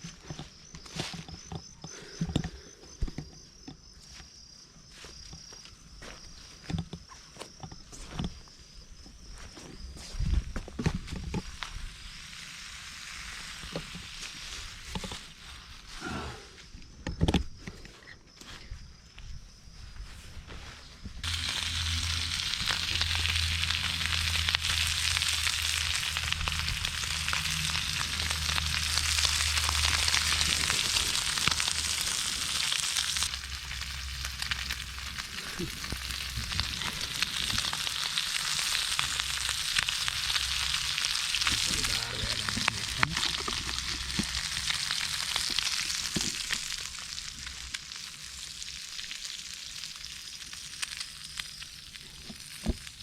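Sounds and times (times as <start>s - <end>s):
meat sizzling in a pan: 11.4s - 15.9s, 21.2s - 53.0s
low hum: 21.2s - 38.1s.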